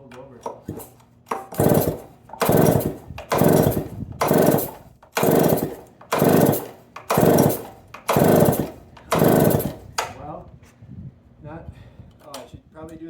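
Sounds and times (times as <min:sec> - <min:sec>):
chainsaw recoil starter pulls: 0:00.4 - 0:10.2
engine turning over: 0:00.6 - 0:09.9.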